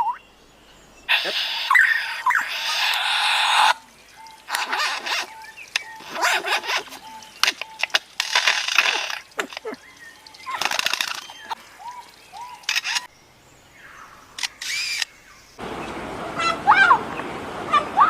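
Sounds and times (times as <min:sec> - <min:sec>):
short hissing bursts: 0:01.1 - 0:03.8
bird mimicking clicks: 0:01.1 - 0:11.6, 0:12.3 - 0:13.1, 0:14.4 - 0:15.1.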